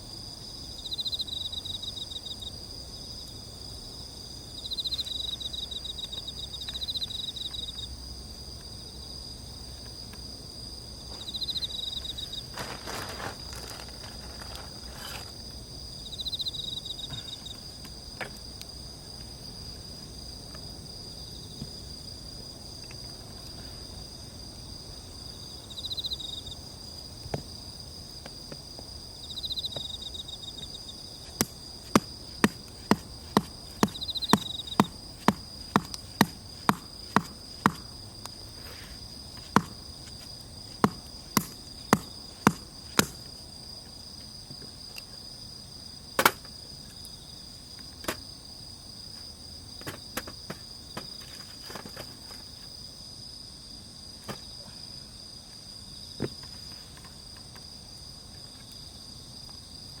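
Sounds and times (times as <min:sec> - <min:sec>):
insects chirring: 0:00.0 - 1:00.0
sharp knocks: 0:31.4 - 0:37.9, 0:39.5 - 0:39.8, 0:40.8 - 0:43.2.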